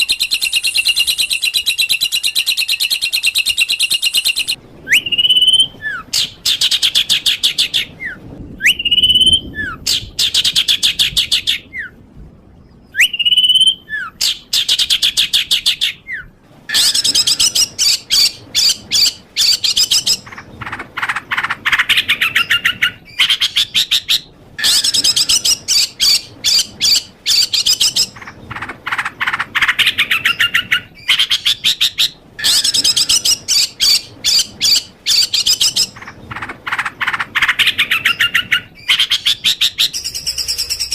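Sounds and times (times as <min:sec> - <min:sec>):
songbird whistling and trilling: 0:00.0 - 0:12.0, 0:12.9 - 0:20.4, 0:22.0 - 0:28.3, 0:29.9 - 0:36.0, 0:37.4 - 0:40.9.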